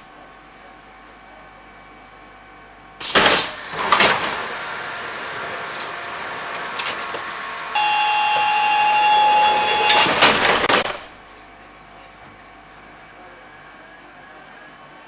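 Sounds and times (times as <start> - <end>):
air hiss of sliding doors: 3.0 - 7.8
steady warning buzz: 7.7 - 10.2.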